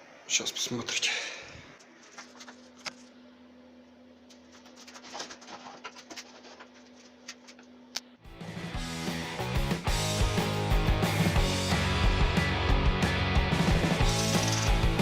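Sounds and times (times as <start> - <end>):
faint steady hum: 0.0 - 8.3
music: 8.2 - 15.0.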